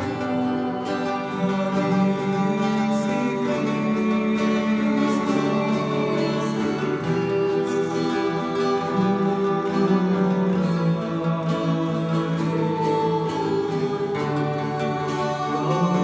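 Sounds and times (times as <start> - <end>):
acoustic guitar strumming chords: 0.0 - 16.0
person singing a hymn: 0.0 - 16.0.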